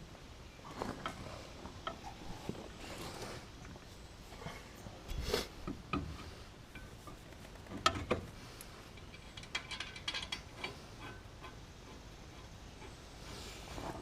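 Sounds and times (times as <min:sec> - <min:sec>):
metallic knocks and clanks: 0:09.2 - 0:11.6.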